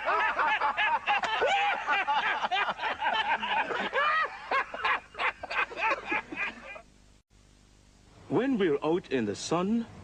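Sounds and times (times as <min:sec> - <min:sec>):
people laughing: 0:00.0 - 0:06.8.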